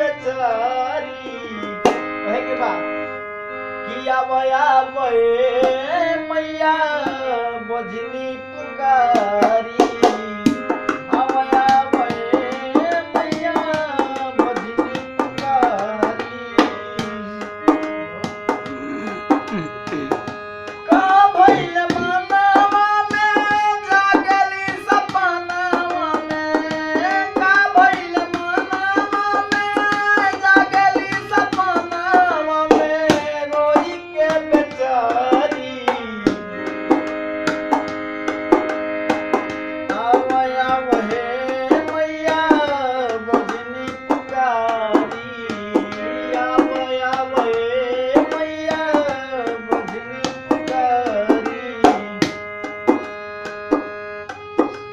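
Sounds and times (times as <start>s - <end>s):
tabla rhythm: 0.0s - 3.1s, 3.8s - 54.9s
sliding melodic lead: 9.6s - 26.4s.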